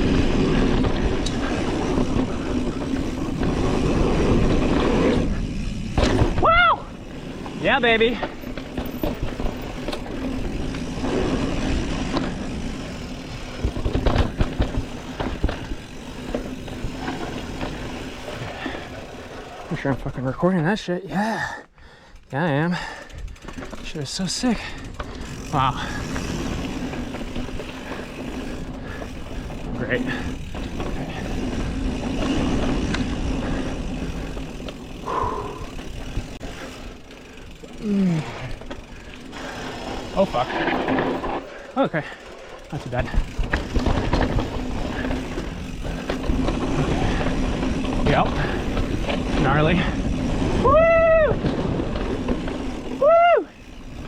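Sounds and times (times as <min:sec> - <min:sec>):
wind and tyre rumble: 0:00.0 - 0:20.8, 0:22.1 - 0:54.0
bike rattling: 0:00.0 - 0:54.0
bike frame knocks and rattles: 0:05.4 - 0:06.6, 0:08.1 - 0:10.9, 0:13.4 - 0:17.8, 0:42.7 - 0:49.9.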